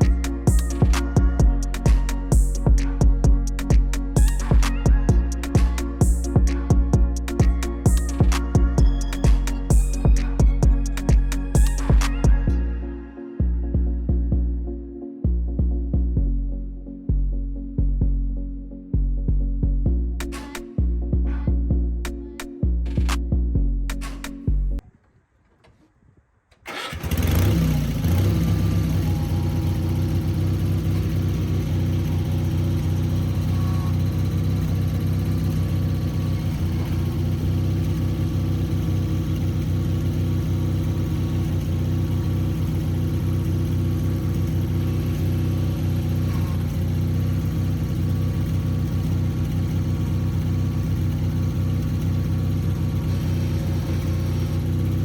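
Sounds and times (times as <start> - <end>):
tractor engine starting and running: 0.0 - 12.7, 26.5 - 55.0.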